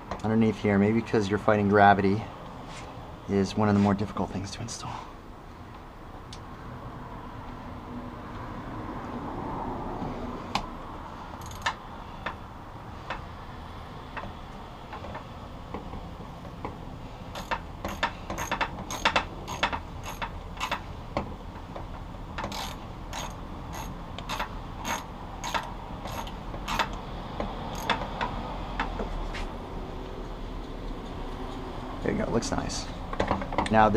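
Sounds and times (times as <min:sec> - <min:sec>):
sharp metallic clicks: 0:17.3 - 0:20.9, 0:22.4 - 0:27.0, 0:27.7 - 0:28.9.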